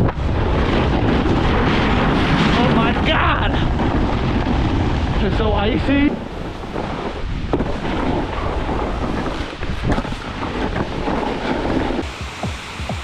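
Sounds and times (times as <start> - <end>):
wind rushing over microphone: 0.0 - 13.0
snowboard edge scraping icy snow: 5.9 - 13.0.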